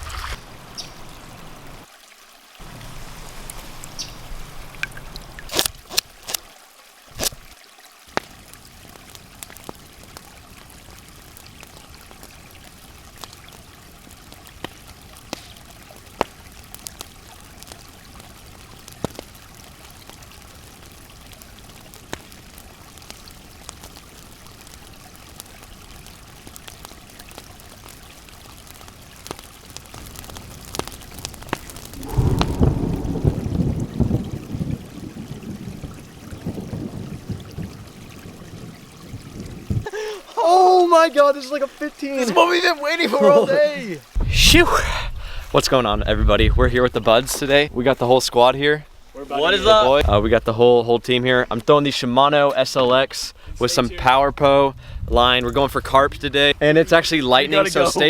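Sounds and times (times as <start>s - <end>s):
water trickling and flowing: 0.0s - 58.0s
loud low rumble: 32.0s - 34.4s.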